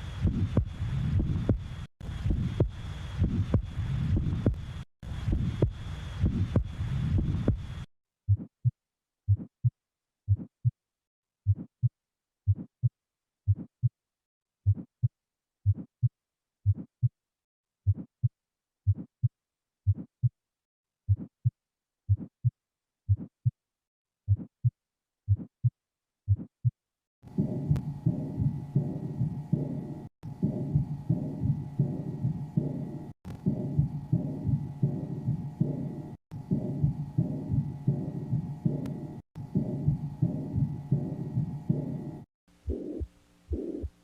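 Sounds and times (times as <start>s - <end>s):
noisy recording: 0.0s - 7.9s, 27.2s - 44.0s
heartbeat lub-dub: 0.0s - 9.5s, 26.3s - 44.0s.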